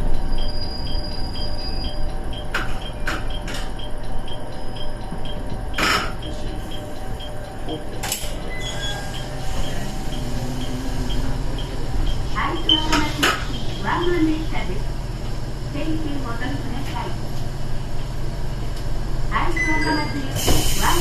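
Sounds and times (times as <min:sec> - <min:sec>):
railcar engine and wheels rumble: 0:00.0 - 0:21.0.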